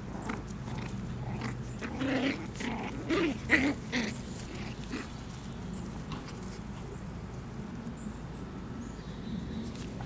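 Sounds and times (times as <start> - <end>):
puppies pattering and rustling: 0.2 - 8.0.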